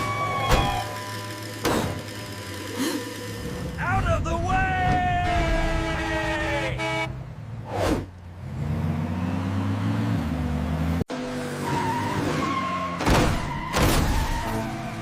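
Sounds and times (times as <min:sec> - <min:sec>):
cartoon car engine revving: 0:00.7 - 0:03.8.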